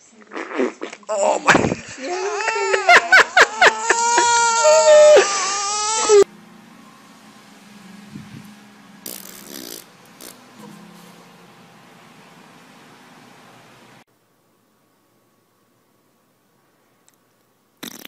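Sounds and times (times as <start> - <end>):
baby crying: 2.0 - 6.3.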